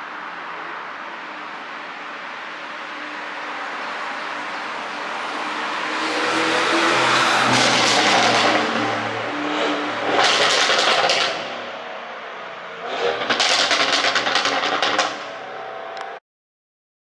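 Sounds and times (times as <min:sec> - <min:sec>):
loud car engine: 0:00.0 - 0:16.2
exhaust pops and crackles: 0:10.1 - 0:11.6, 0:12.8 - 0:16.2.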